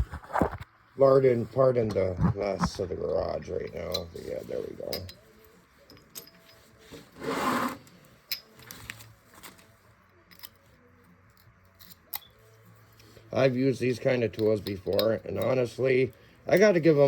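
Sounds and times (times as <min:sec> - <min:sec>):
short scraping rub: 0:06.8 - 0:07.9.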